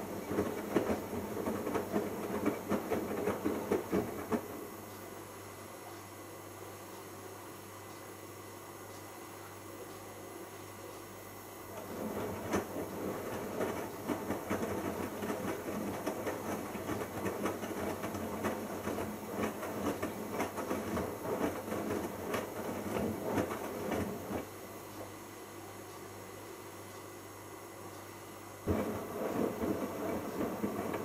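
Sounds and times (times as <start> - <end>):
washing machine drum tumbling laundry: 0.0 - 4.8, 11.7 - 24.6, 28.7 - 31.0
steady low hum: 0.0 - 31.0.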